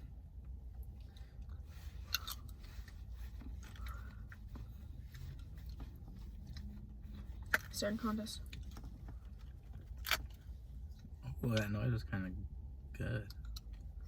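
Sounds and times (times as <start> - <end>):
chewing ice cream: 1.3 - 7.8, 8.4 - 11.7
wet smacks and clicks: 8.4 - 10.4.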